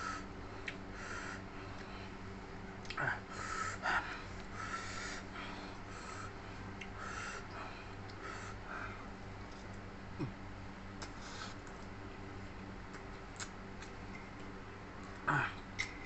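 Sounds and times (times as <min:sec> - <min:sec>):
person breathing hard: 0:00.9 - 0:02.3, 0:03.0 - 0:09.1
chewing clicks: 0:12.9 - 0:15.2.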